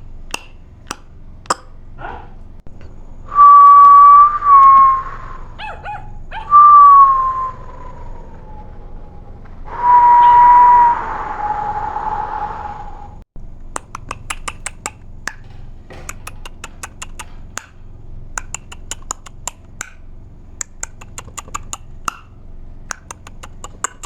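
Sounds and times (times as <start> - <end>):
low steady hum: 0.0 - 24.0
sharp clicks and taps: 0.2 - 1.8, 13.6 - 24.0.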